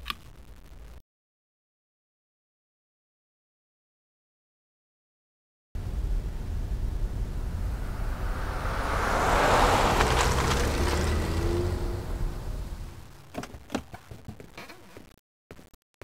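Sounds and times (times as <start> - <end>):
car passing: 5.8 - 13.2
low rumble: 5.8 - 13.2.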